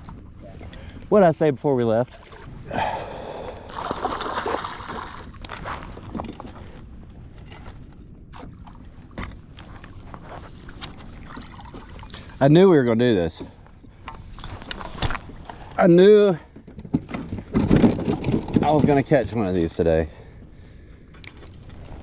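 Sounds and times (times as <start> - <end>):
water splashing: 3.6 - 5.4.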